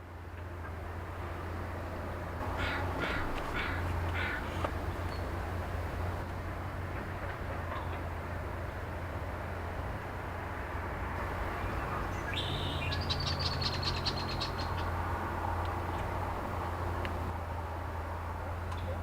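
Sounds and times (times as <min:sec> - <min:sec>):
distant excavator droning: 0:00.2 - 0:19.0
bird trilling: 0:02.5 - 0:05.3, 0:11.7 - 0:15.0.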